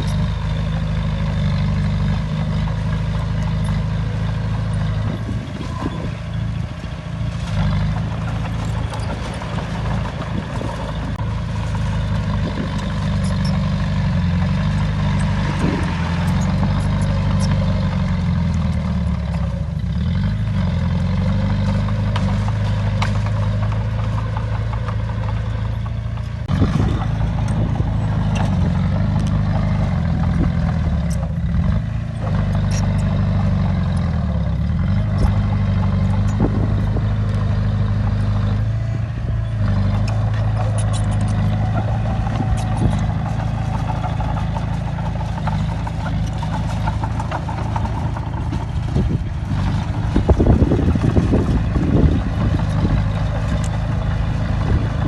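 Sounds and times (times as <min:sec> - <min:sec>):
heavy diesel engine under load: 0:00.0 - 0:55.0
metallic clanks: 0:39.6 - 0:54.1.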